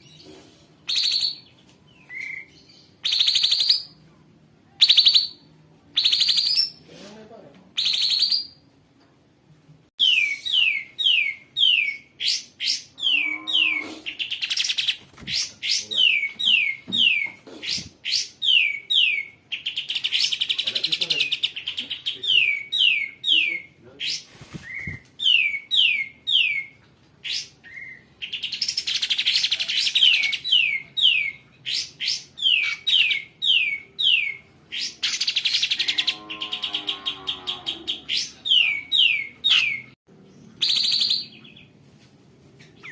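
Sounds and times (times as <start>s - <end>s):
bird harsh rasping calls: 10.0s - 14.9s.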